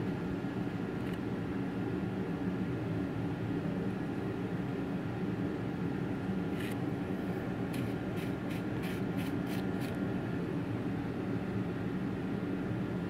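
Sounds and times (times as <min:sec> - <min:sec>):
steady low hum: 0:00.0 - 0:13.0
scratchy scraping strokes: 0:07.7 - 0:10.0.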